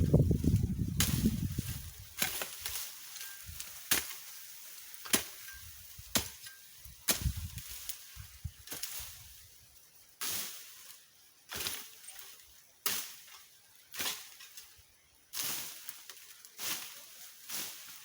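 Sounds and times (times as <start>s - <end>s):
hand tool chopping brush: 0.4s - 8.0s, 11.5s - 12.2s.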